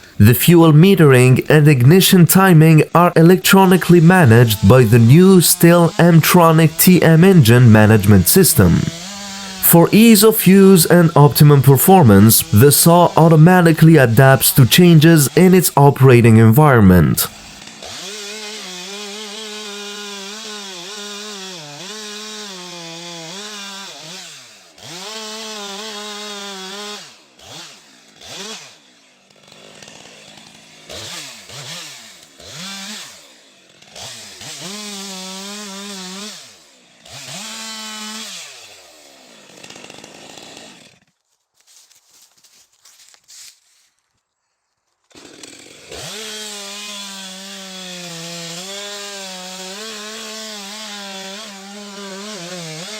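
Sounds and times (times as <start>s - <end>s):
chainsaw revving: 8.8s - 9.6s, 17.3s - 41.0s, 45.1s - 52.9s.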